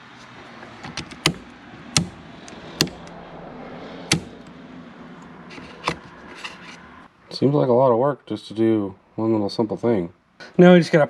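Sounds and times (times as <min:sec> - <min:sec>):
sharp clicks: 0:04.1 - 0:04.5.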